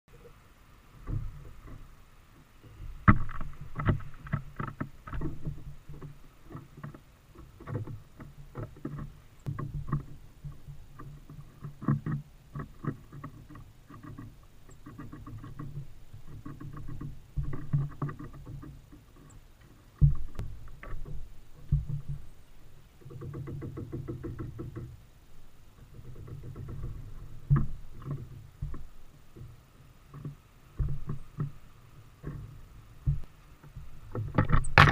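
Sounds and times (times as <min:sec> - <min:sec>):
birds pecking rapid tapping: 0:02.7 - 0:22.3, 0:23.0 - 0:25.0, 0:25.8 - 0:29.5
birds landing knocks: 0:32.2 - 0:34.9.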